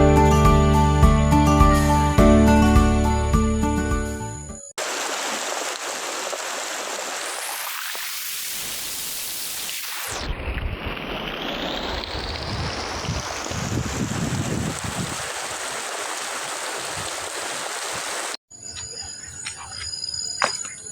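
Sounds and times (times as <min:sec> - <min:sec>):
heavy rain falling: 0:04.8 - 0:07.3
wind buffeting microphone: 0:11.8 - 0:15.8, 0:16.9 - 0:17.3.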